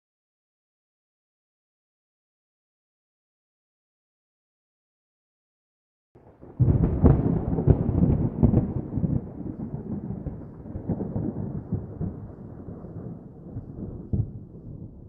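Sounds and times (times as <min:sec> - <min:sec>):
thunder cracks and rumble: 0:06.2 - 0:15.0.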